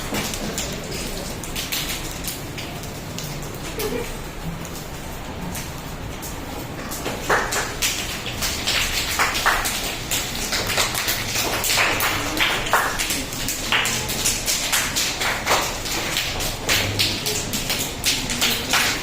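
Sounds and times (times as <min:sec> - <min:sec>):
hands clapping softly: 0:07.0 - 0:19.0.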